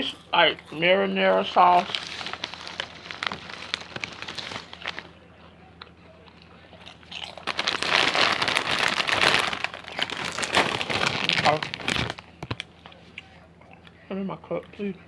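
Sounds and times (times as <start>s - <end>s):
chips being chewed: 0.0s - 5.2s, 5.8s - 13.9s
bag crinkling and rustling: 1.2s - 5.2s, 6.8s - 12.7s.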